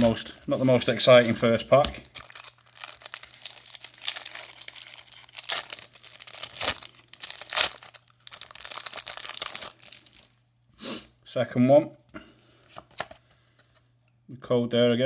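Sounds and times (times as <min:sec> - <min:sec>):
wrapper crinkling and tearing: 0:00.0 - 0:10.4
sharp wrapper rips: 0:02.0 - 0:10.4.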